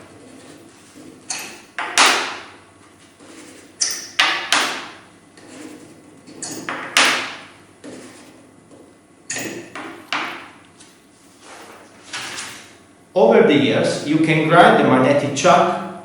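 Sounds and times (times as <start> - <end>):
metallic scrapes and clacks: 3.1 - 6.8.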